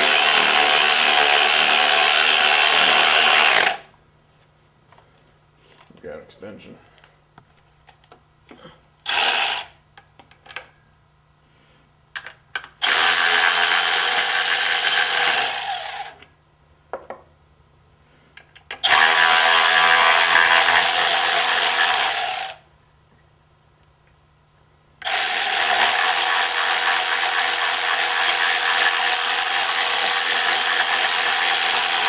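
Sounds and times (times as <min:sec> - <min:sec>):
power tool removing bolts: 0:00.0 - 0:03.9, 0:12.2 - 0:16.3, 0:18.8 - 0:22.6, 0:25.0 - 0:32.0.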